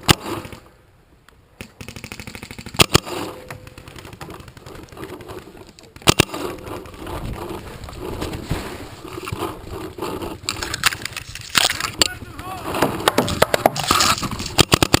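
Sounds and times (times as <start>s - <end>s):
gear rustling: 3.4s - 14.7s.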